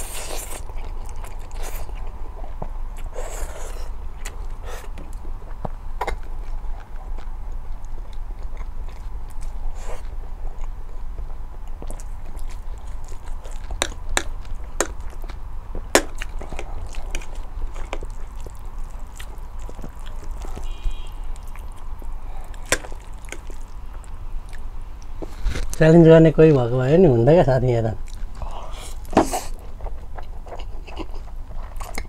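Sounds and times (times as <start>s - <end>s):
person chewing food: 0.0s - 25.8s, 28.0s - 32.0s
steady low hum: 0.0s - 32.0s.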